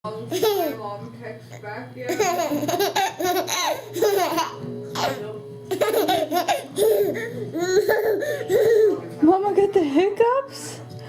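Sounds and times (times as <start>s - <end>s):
child laughing: 2.1s - 8.9s.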